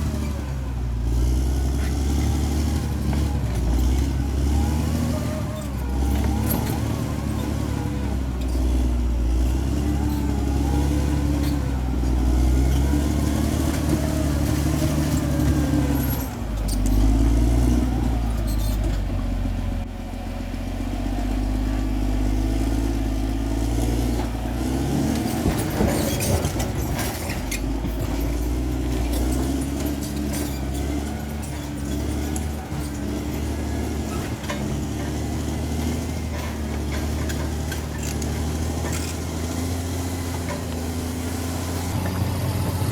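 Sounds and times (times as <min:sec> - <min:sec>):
bulldozer engine under load: 0:00.0 - 0:42.9
clanking and rattling: 0:23.8 - 0:42.9.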